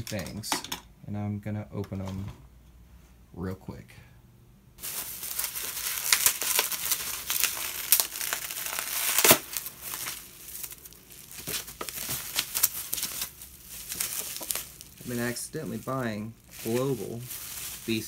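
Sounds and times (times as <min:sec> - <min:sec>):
packaging crinkling: 0:04.8 - 0:18.0
packaging ripping: 0:04.8 - 0:18.0.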